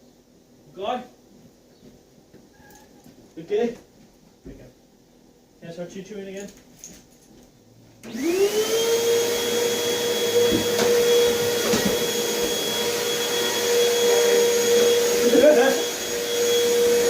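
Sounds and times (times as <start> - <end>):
vacuum cleaner motor whine: 8.0 - 17.0.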